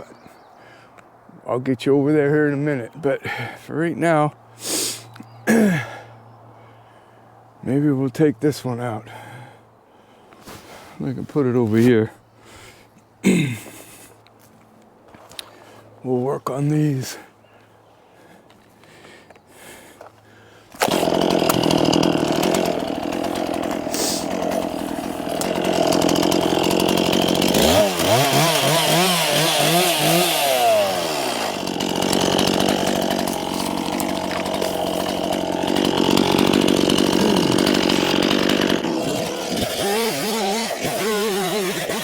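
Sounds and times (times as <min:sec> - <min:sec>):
chainsaw cutting wood: 0:20.7 - 0:42.0.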